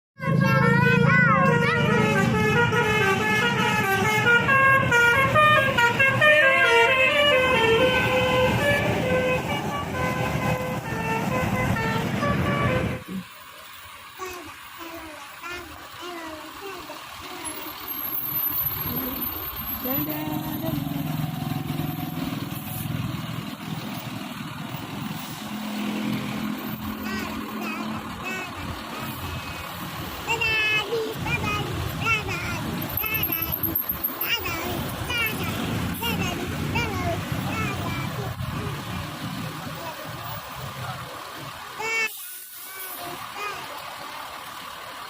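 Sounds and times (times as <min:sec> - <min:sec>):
heavy vehicle engine drone: 0:00.2 - 0:45.0
road traffic passing: 0:00.2 - 0:45.0
musical air horn melody: 0:00.4 - 0:13.1.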